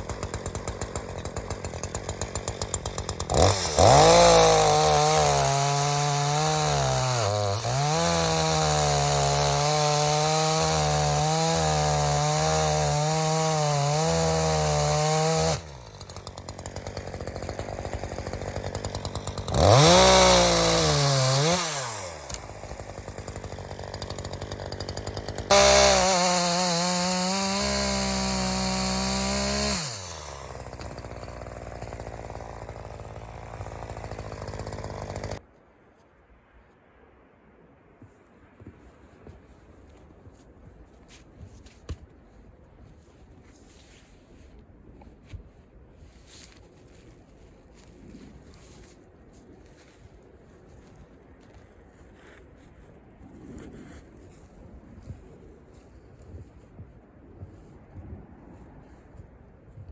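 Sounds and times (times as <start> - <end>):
chainsaw revving and idling: 0.0 - 35.4.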